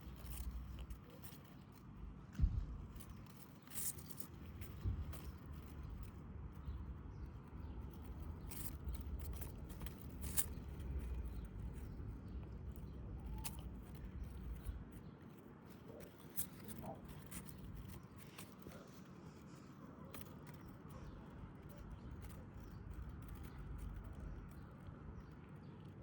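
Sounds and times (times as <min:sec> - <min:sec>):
grass rustling: 0:00.0 - 0:24.7
low rumble: 0:02.4 - 0:03.0
cat biting grass crunching: 0:07.6 - 0:14.9.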